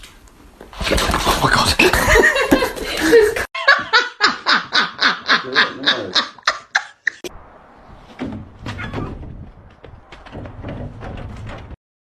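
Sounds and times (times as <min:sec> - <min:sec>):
person laughing hard: 0:01.8 - 0:07.3
low rustling and soft knocks: 0:07.9 - 0:11.8.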